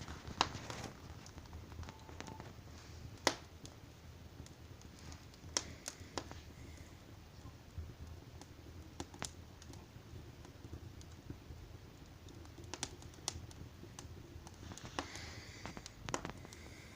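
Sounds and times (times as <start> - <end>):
sharp pops of fire: 0.0 - 6.9, 7.8 - 16.7
wood fire crackling: 0.0 - 16.9.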